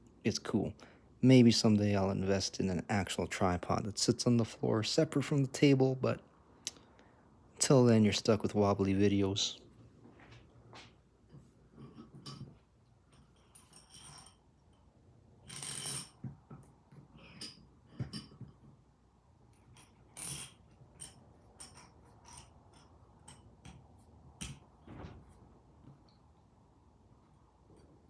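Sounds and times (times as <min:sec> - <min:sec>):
metal parts clicking and clinking: 0:13.1 - 0:14.5, 0:15.4 - 0:16.2, 0:19.5 - 0:23.5.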